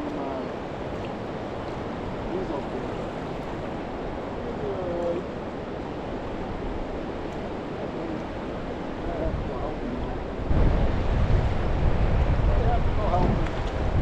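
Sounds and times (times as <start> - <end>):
flowing river water: 0.0 - 14.0.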